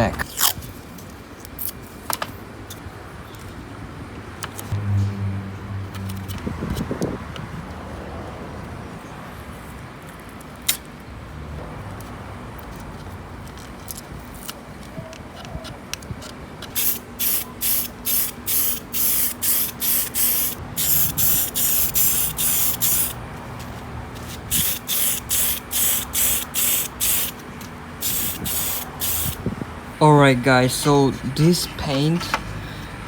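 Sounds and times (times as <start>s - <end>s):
spray paint can hissing: 16.8s - 23.2s, 24.5s - 27.4s, 28.0s - 29.4s.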